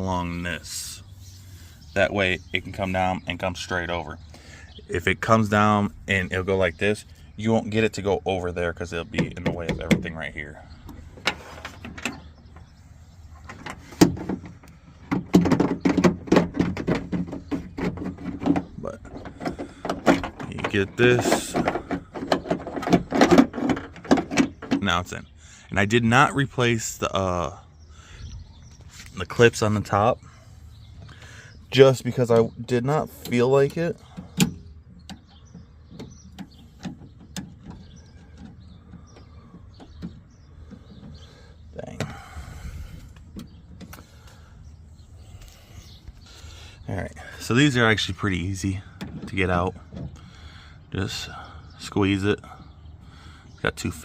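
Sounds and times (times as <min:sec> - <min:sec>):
door latch rattling against metal: 0:09.0 - 0:10.2, 0:13.4 - 0:24.9.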